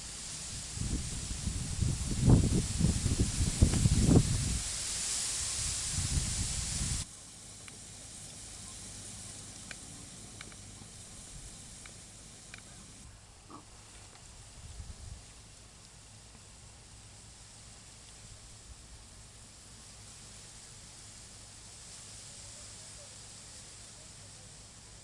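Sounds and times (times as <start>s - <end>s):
low rumbling: 0.0s - 7.1s
loud steady hiss: 0.0s - 25.0s
faint ticks: 7.5s - 14.3s, 17.9s - 18.3s.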